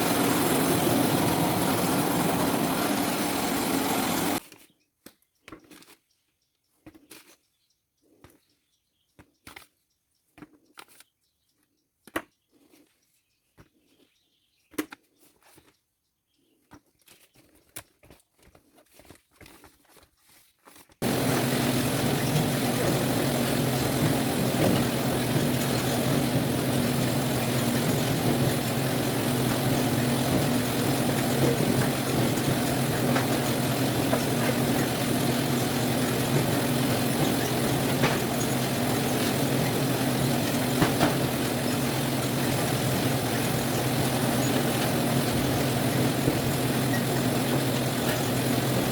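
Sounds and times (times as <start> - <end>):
sorting machine running with hum: 0.0 - 4.4, 21.0 - 48.9.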